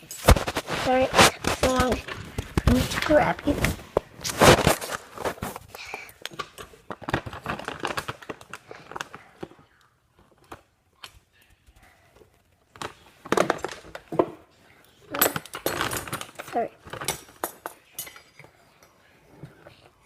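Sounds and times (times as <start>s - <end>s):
plastic package crinkling and tearing: 0.2s - 11.1s, 12.7s - 14.1s.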